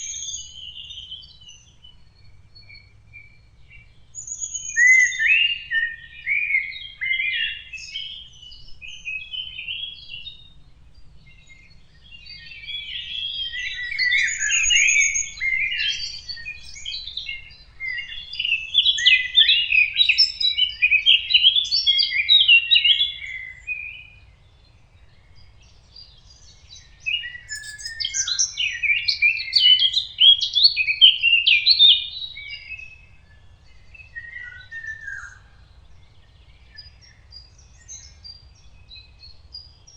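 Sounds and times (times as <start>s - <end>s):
songbird warbling: 12.2s - 24.0s.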